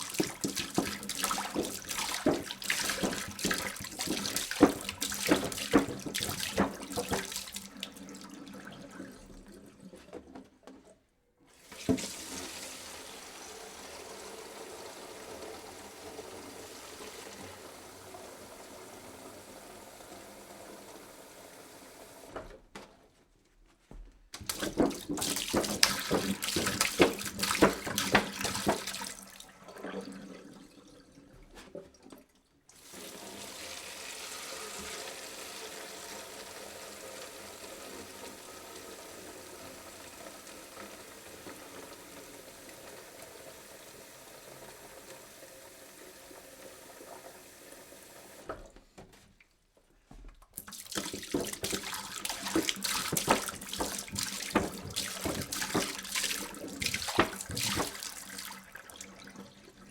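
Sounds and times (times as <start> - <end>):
liquid pouring into container: 0.0 - 9.9, 24.4 - 31.6, 50.6 - 59.9.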